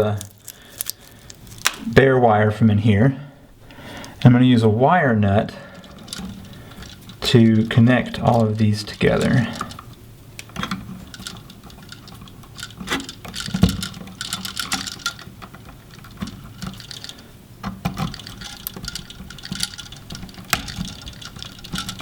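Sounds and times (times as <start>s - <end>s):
wire nut scraping on wires: 5.8s - 22.0s
small irregular clicks: 8.3s - 22.0s.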